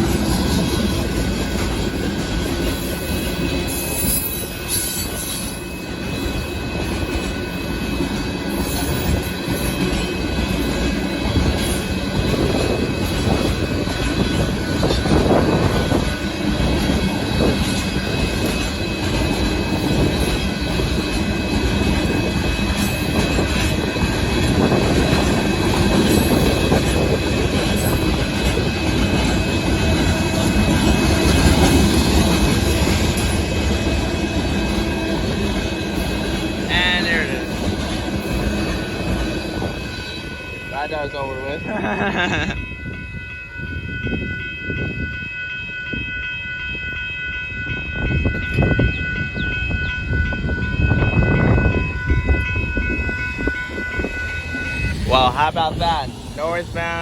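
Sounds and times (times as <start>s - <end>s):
freight train wheels rumbling: 0.0s - 57.0s
high-pitched wheel squeal: 2.8s - 7.8s, 48.3s - 57.0s.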